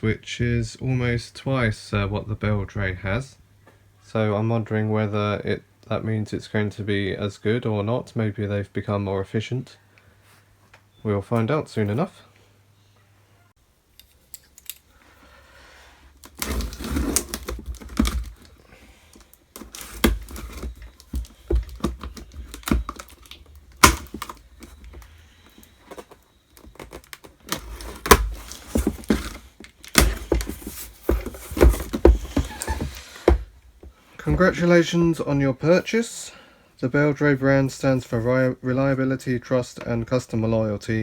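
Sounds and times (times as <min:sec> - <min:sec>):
cardboard box being opened: 0:16.2 - 0:33.5.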